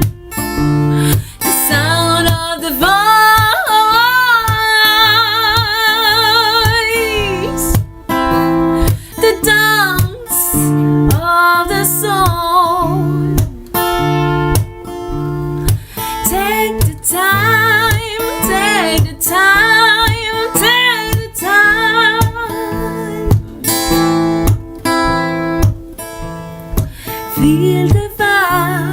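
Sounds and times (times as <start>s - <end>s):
acoustic guitar: 0.0s - 28.9s
person singing: 1.0s - 7.8s, 16.2s - 23.8s, 27.3s - 28.9s.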